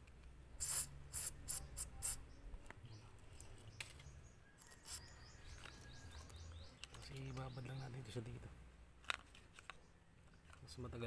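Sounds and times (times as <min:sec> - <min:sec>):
aerosol can spraying: 0:00.6 - 0:02.2.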